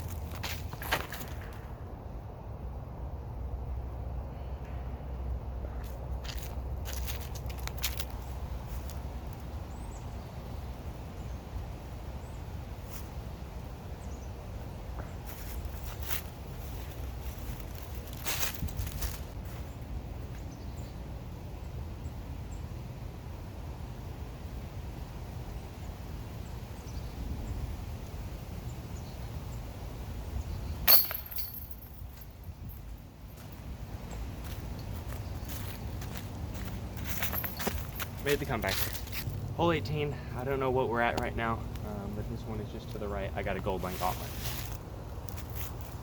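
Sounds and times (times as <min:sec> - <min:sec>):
rustling footsteps: 0:00.0 - 0:01.7, 0:05.8 - 0:09.4, 0:15.2 - 0:19.7, 0:30.9 - 0:39.6, 0:43.7 - 0:46.0
wind rumble on microphone: 0:15.3 - 0:20.8, 0:25.5 - 0:30.9
disc striking basket chains: 0:30.8 - 0:33.6, 0:37.0 - 0:39.3.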